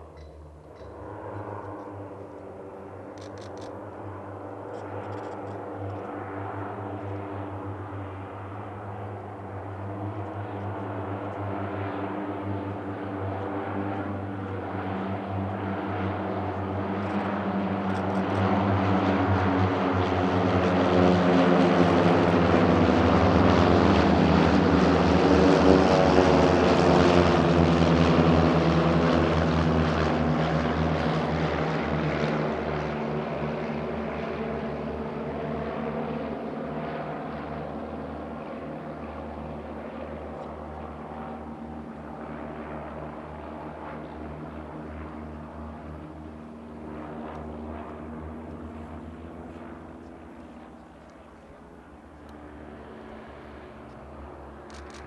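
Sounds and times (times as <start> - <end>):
propeller planes droning past: 0.0 - 55.0.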